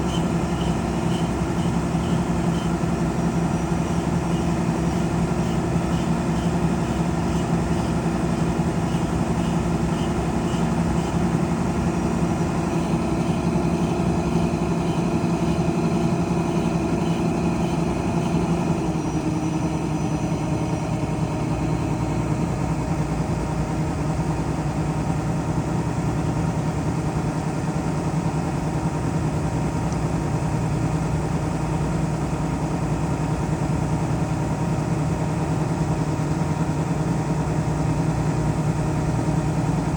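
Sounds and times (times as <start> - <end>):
grain auger unloading: 0.0 - 19.7
combine harvester engine running: 0.0 - 39.9.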